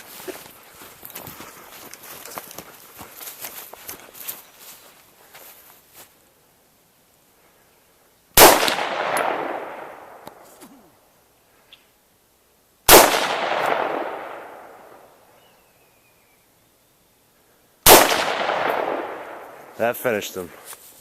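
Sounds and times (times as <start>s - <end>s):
gunshots with echo: 8.4s - 10.2s, 12.9s - 15.0s, 17.8s - 19.6s.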